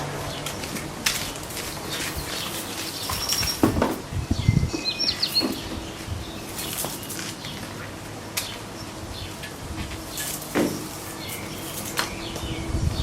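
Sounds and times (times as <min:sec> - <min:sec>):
bird chirping: 0:01.6 - 0:07.8, 0:10.1 - 0:13.0
knocks and dull thuds: 0:03.5 - 0:04.1.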